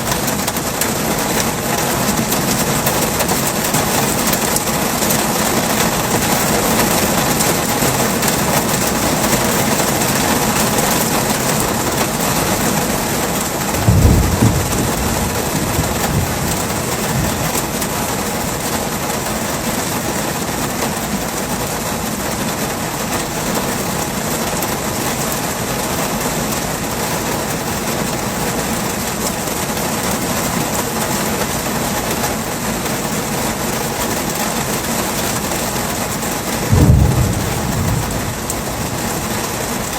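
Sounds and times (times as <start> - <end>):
heavy rain falling: 0.0 - 39.9
thunder clap and rumble: 13.0 - 18.8, 36.4 - 39.9.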